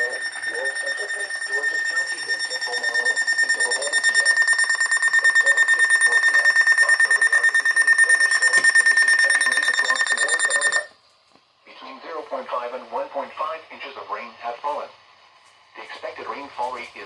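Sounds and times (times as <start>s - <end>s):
electronic alarm beeping: 0.0s - 10.9s.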